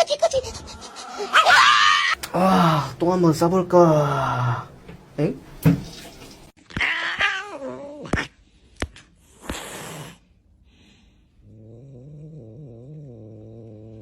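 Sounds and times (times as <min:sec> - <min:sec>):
cat yowling: 0:01.3 - 0:02.2, 0:06.7 - 0:08.2
cat growling low: 0:11.4 - 0:14.0.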